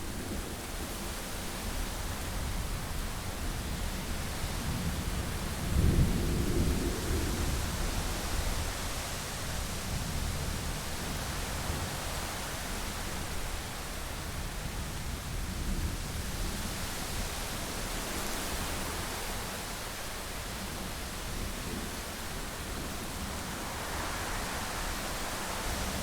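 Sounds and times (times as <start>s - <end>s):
low thunder rumble: 4.6s - 8.7s
rain hissing: 21.4s - 26.0s.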